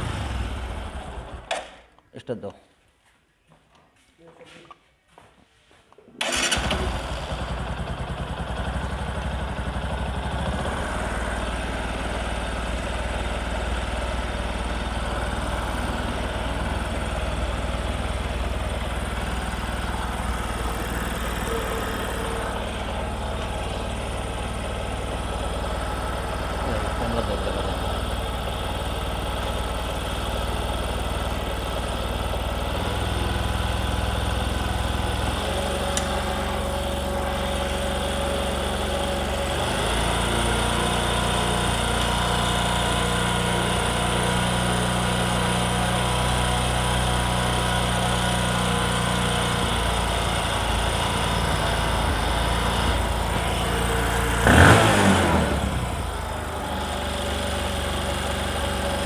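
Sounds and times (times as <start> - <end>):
engine revving: 0.0 - 1.5, 14.9 - 29.4, 32.6 - 59.0
motorcycle engine idling: 0.0 - 1.5, 6.2 - 59.0.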